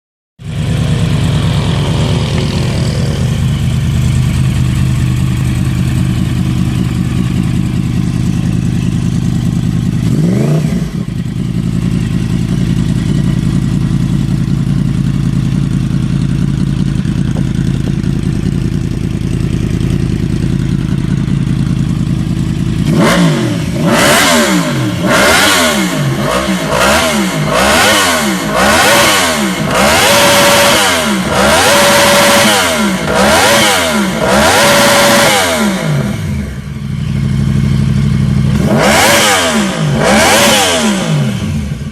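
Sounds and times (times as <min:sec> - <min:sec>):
motorcycle engine idling and revving: 0:00.4 - 0:41.9.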